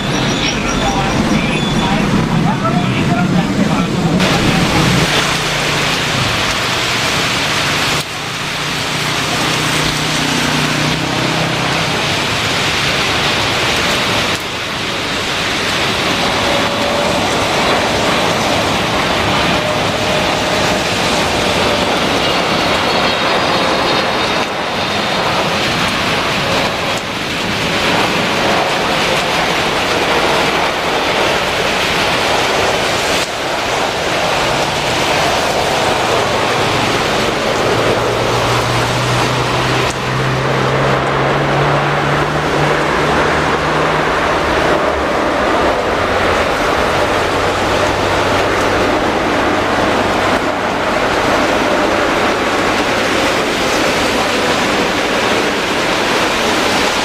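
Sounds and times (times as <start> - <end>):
faint jet engine whine: 0.0 - 7.1, 11.9 - 39.9
heavy rain hissing: 0.0 - 57.0.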